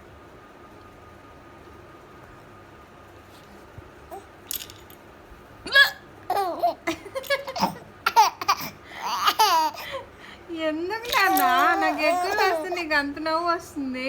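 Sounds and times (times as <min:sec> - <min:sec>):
baby laughing: 0:05.7 - 0:10.0, 0:11.1 - 0:13.0.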